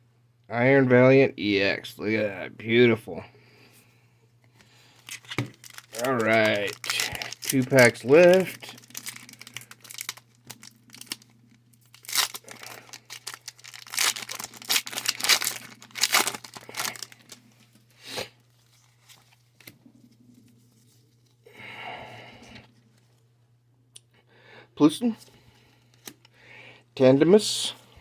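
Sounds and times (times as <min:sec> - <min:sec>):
foil wrapper tearing and crinkling: 0:04.8 - 0:19.7.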